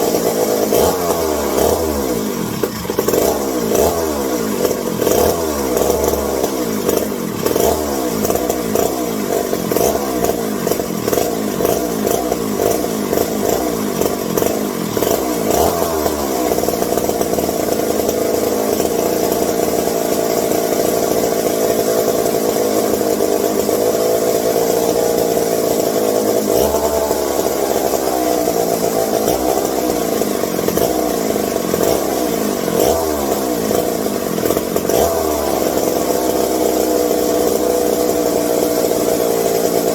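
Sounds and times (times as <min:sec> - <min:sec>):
chainsaw engine running: 0:00.0 - 0:39.9.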